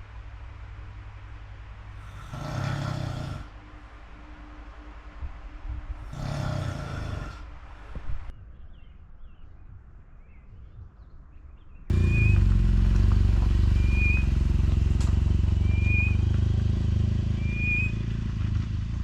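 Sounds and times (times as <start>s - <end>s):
motorcycle engine running: 11.9s - 19.0s
high chirping night sounds: 12.0s - 12.4s, 13.8s - 14.3s, 15.7s - 16.2s, 17.4s - 18.0s.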